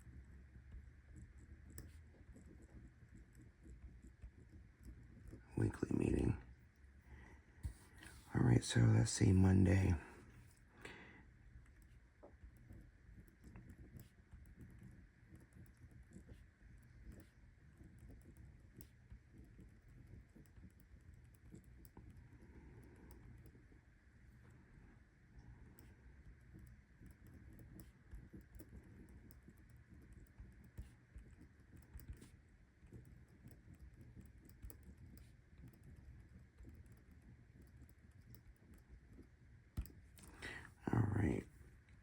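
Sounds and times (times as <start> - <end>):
low room hum: 0.0 - 42.0
pen writing on paper: 0.2 - 5.4, 11.7 - 22.3, 26.5 - 40.0.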